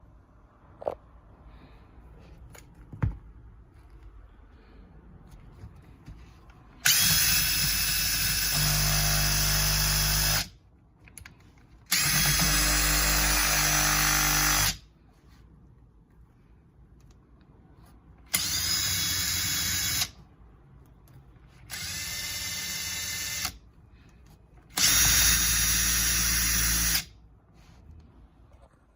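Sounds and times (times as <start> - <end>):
impact driver running: 6.8 - 10.5, 11.9 - 14.8, 24.7 - 27.1.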